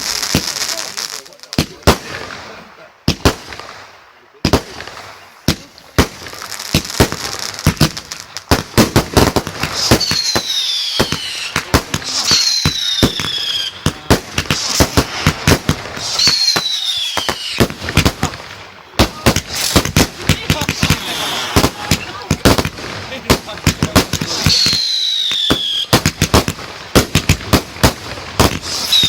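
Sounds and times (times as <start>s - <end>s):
fireworks bangs and crackling: 0.0s - 29.0s
firework whistles sliding down: 9.8s - 13.8s, 16.0s - 17.6s, 24.4s - 25.9s, 28.6s - 29.0s.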